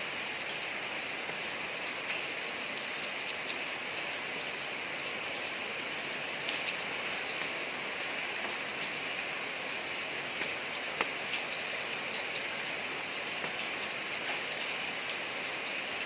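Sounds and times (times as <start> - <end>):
rain hissing on street: 0.0 - 16.0
rain drop ticks: 6.3 - 15.8.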